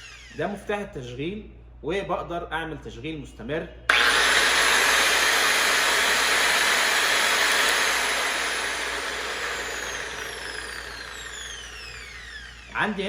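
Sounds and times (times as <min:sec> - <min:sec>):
angle grinder whining: 0:00.0 - 0:00.6, 0:03.9 - 0:13.0.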